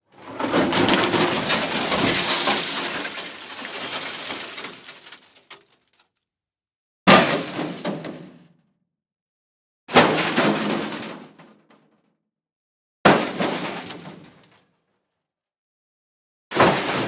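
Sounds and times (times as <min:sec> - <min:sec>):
car crash: 0:00.2 - 0:05.6
debris clattering and tinkling: 0:00.2 - 0:06.0
glass breaking: 0:00.4 - 0:05.8.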